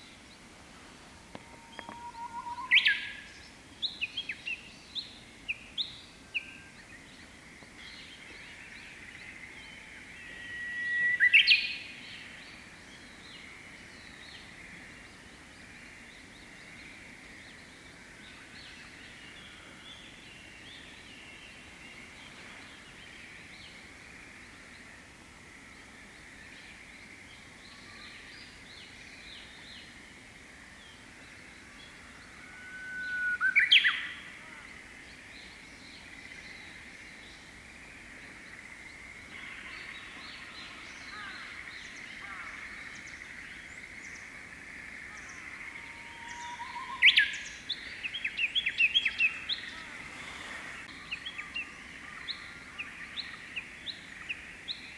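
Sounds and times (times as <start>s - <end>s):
bird singing whistled song: 1.7s - 6.5s, 9.7s - 11.9s, 32.6s - 34.2s, 46.3s - 49.6s.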